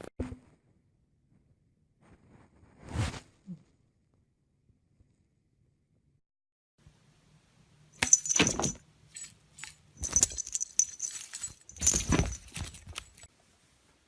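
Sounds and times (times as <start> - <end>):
metal jingling: 8.0 - 13.3.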